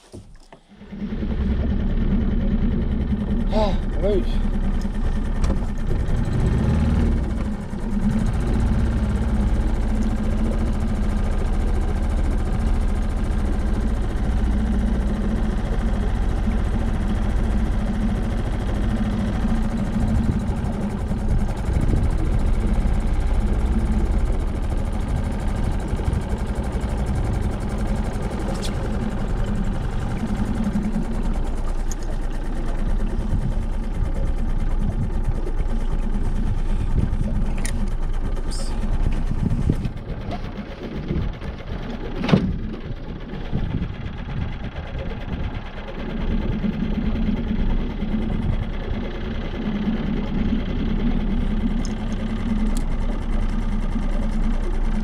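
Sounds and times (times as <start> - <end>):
small engine running: 0.1 - 55.0.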